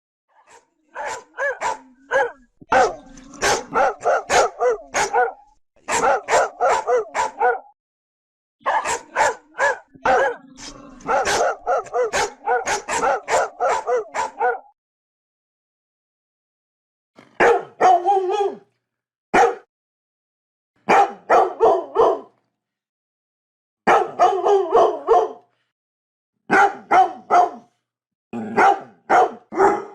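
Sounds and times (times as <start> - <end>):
large dogs barking: 0.3 - 7.8, 8.6 - 14.8, 17.4 - 18.7, 19.4 - 19.7, 20.8 - 22.4, 23.9 - 25.5, 26.5 - 27.7, 28.4 - 29.9.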